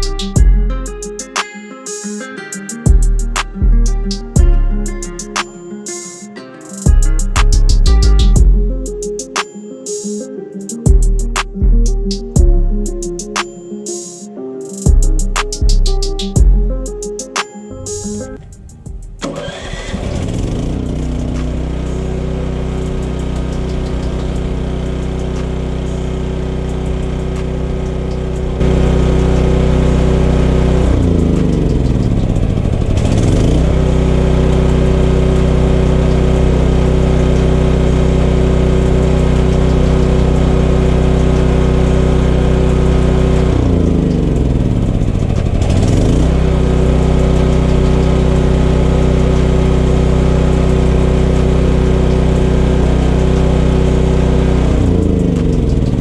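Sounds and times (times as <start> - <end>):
generator engine running: 18.4 - 56.0.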